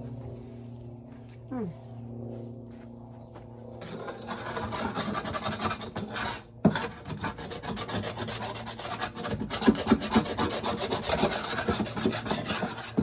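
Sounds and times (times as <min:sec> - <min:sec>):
hand tool scraping coop floor: 0:03.8 - 0:13.0.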